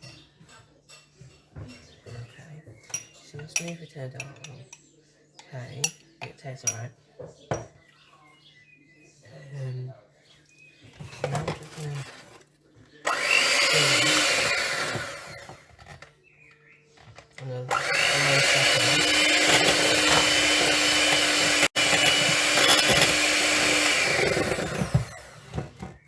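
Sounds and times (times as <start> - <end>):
electric mixer beating icing: 13.1 - 15.6, 17.7 - 25.7.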